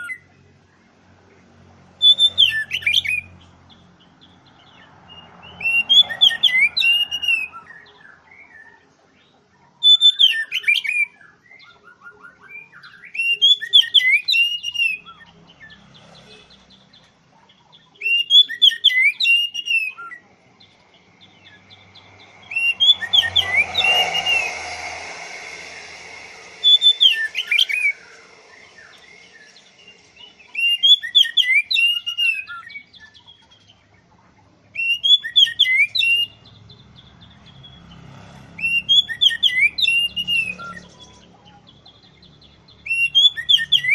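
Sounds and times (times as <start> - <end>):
background noise: 0.0 - 43.9
songbird whistling phrases: 2.0 - 3.3, 5.1 - 8.8, 9.8 - 15.3, 18.0 - 20.2, 22.4 - 33.3, 34.8 - 36.4, 42.8 - 43.9.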